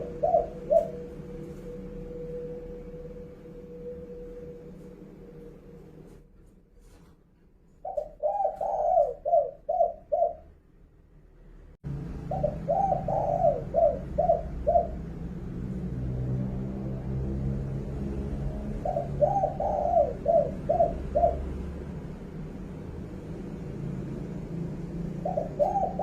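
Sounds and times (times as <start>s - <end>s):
dove cooing: 0.0s - 6.2s, 7.8s - 10.6s, 12.1s - 16.0s, 18.3s - 26.0s.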